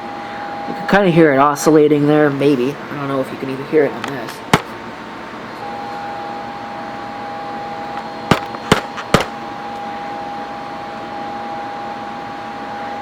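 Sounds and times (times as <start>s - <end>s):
hard drive whine: 0.0s - 13.0s
hard drive clicks: 8.0s - 9.4s.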